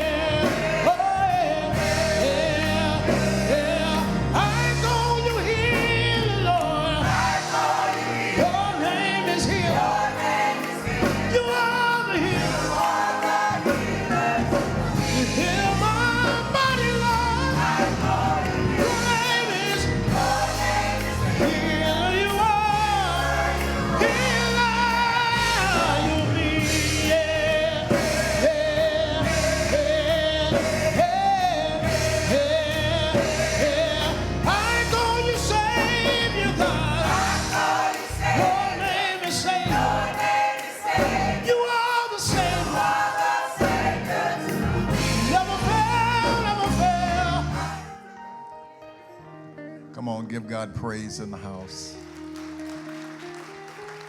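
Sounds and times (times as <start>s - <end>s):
bass guitar: 0.0s - 7.5s, 10.9s - 11.5s, 13.5s - 39.0s, 39.6s - 40.2s, 41.0s - 41.4s, 42.3s - 43.0s, 43.6s - 47.9s
drums: 0.0s - 47.9s
choir singing gospel: 0.0s - 49.2s
keyboard: 0.0s - 54.0s.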